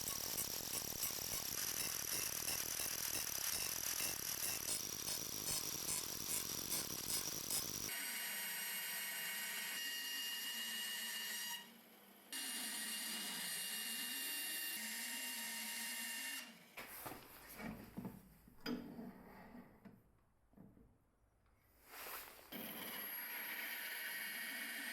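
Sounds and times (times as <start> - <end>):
power tool running: 0.0 - 9.8.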